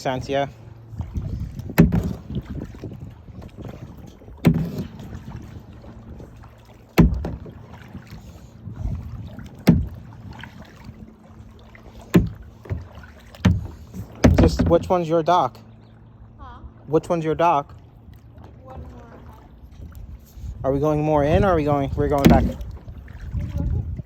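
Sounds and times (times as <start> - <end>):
water rumbling against hull: 0.0 - 24.0
paddle knocks: 1.0 - 15.1, 21.3 - 23.7.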